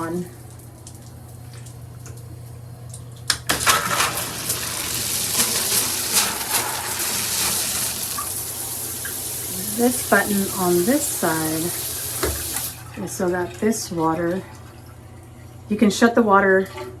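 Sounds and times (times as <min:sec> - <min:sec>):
shower spraying water: 0:03.5 - 0:12.9.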